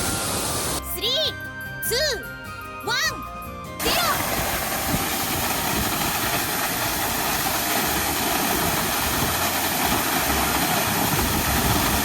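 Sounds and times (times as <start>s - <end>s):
waterfall pouring: 0.0s - 0.8s, 3.8s - 12.0s.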